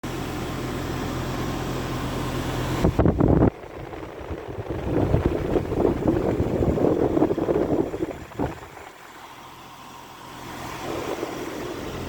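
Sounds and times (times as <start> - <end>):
heat pump humming: 0.0 - 12.0
wind noise on microphone: 2.8 - 9.1, 10.5 - 12.0.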